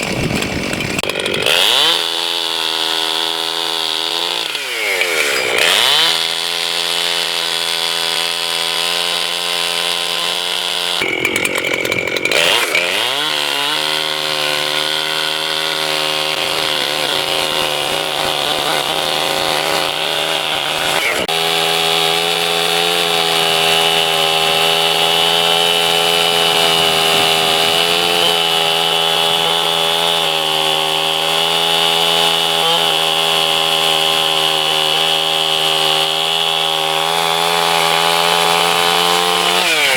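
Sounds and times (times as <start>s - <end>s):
chainsaw running at high revs: 0.0s - 39.9s.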